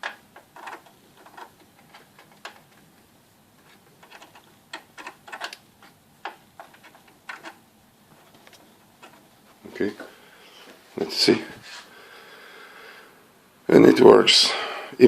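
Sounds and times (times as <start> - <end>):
cable handling knocks: 0.0 - 2.9, 3.6 - 9.3.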